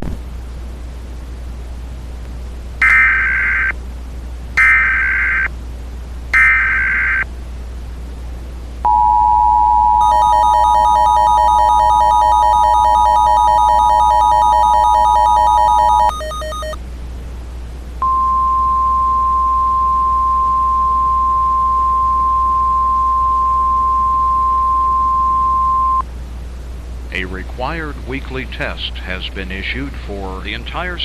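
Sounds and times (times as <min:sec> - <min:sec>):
constant hiss: 0:00.0 - 0:31.0
low hum: 0:00.0 - 0:31.0
screeching digital data bursts: 0:02.8 - 0:03.8, 0:04.6 - 0:05.5, 0:06.4 - 0:07.2
faint pulsing tone: 0:08.8 - 0:16.8, 0:18.0 - 0:26.1
two-tone attention signal: 0:08.9 - 0:16.8, 0:18.0 - 0:26.0.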